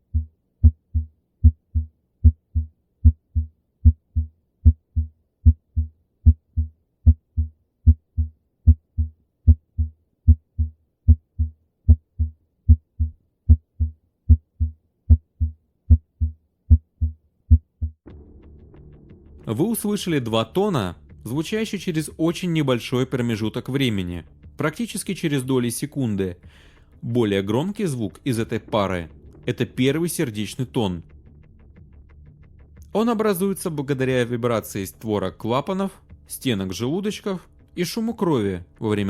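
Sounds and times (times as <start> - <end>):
heartbeat through a stethoscope: 0.0 - 18.0.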